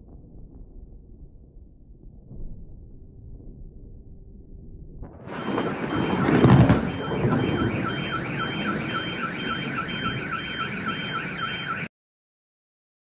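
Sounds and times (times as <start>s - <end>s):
loud rumbling noise: 5.1s - 11.8s
loud burst: 5.2s - 11.9s
electronic alarm warbling: 5.3s - 11.9s.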